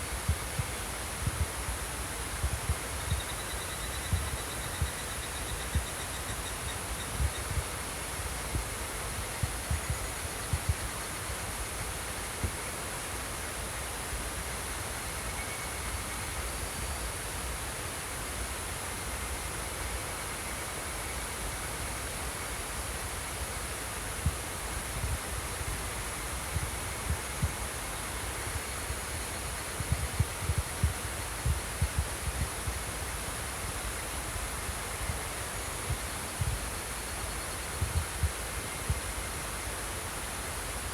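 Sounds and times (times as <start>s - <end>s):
insects chirping: 2.8s - 7.6s.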